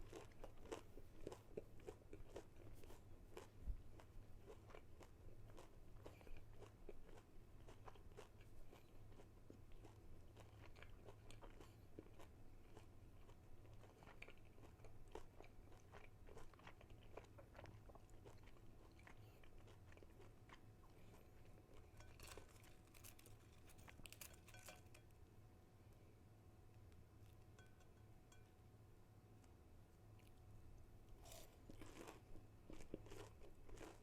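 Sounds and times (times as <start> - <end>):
chewing crispy food: 0.0 - 25.1, 29.4 - 34.0.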